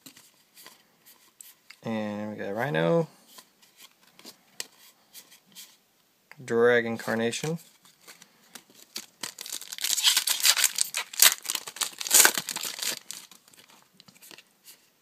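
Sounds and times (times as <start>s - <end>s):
foil wrapper crinkling and tearing: 8.7s - 14.4s.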